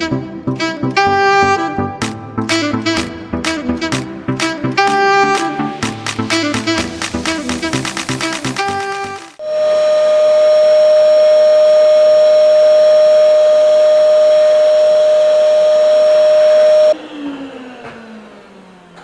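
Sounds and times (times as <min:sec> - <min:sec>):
vacuum cleaner running: 0:09.4 - 0:19.0.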